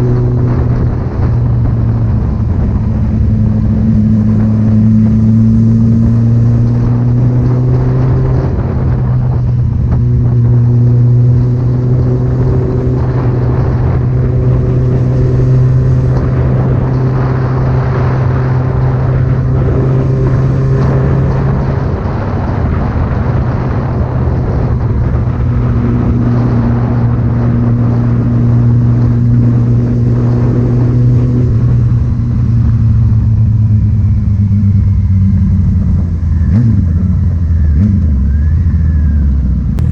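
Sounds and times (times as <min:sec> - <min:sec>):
road rumble: 0:00.0 - 0:39.9
vehicle engine droning: 0:00.0 - 0:39.9.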